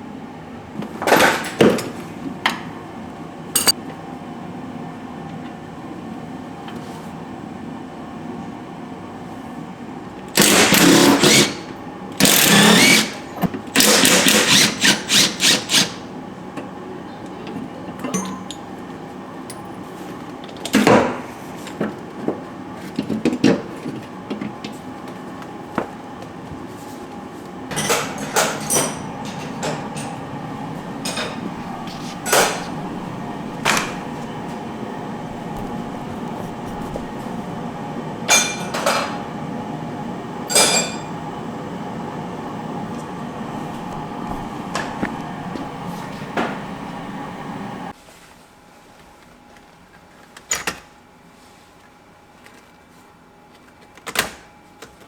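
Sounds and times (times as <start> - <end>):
power tool bursts: 10.4 - 16.0
clinks and knocks: 27.7 - 30.3.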